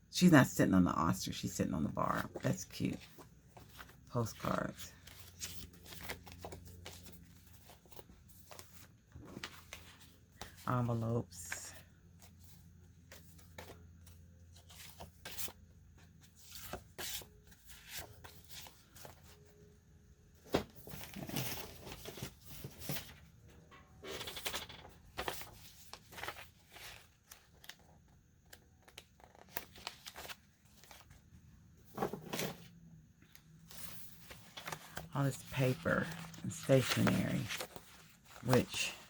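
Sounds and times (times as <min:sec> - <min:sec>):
paper rustling and sliding: 0:02.9 - 0:10.6, 0:33.7 - 0:39.0.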